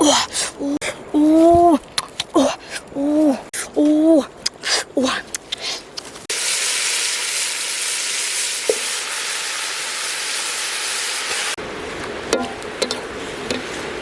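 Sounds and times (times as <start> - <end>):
food sizzling in a pan: 6.3 - 11.6.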